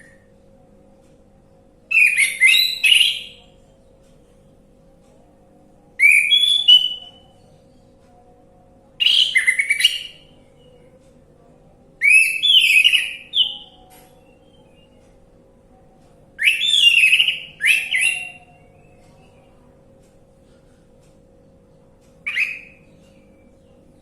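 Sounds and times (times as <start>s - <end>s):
faint steady hum: 0.0s - 24.0s
thrush singing whistled phrases: 1.9s - 3.4s, 6.0s - 7.3s, 9.0s - 10.3s, 12.0s - 14.9s, 16.4s - 19.0s, 22.3s - 22.9s.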